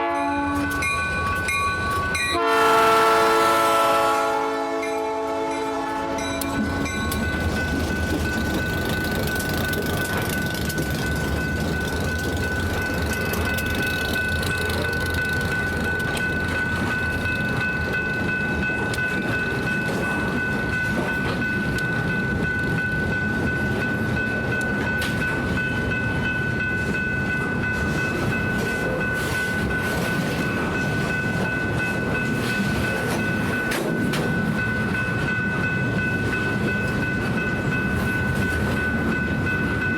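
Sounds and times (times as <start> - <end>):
locomotive horn: 0.0 - 0.8, 2.3 - 6.8
freight train rumbling past: 0.0 - 39.9.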